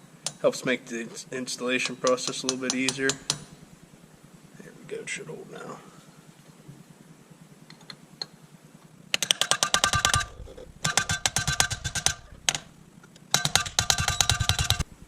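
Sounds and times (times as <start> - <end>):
rapid metallic hammer blows: 1.8 - 3.8, 9.5 - 12.8, 13.4 - 15.0.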